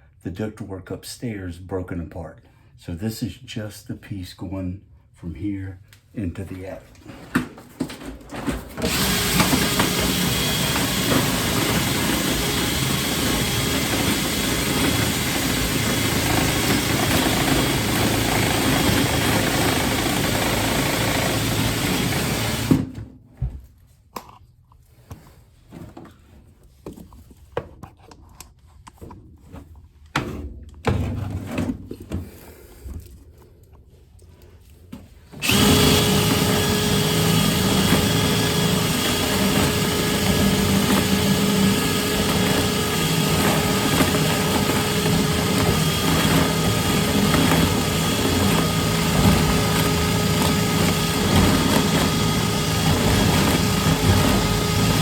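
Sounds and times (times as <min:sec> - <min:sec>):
power drill spinning brush in duct: 0:08.8 - 0:22.9, 0:35.4 - 0:55.0.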